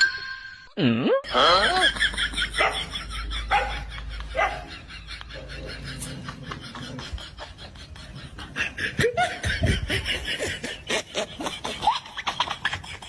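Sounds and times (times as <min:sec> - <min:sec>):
person laughing: 0:00.8 - 0:13.0.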